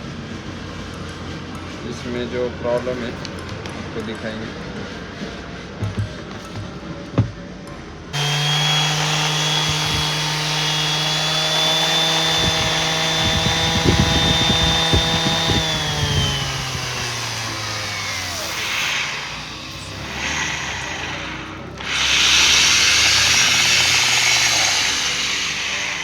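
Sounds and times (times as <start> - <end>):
orbital sander whining: 8.2 - 26.0.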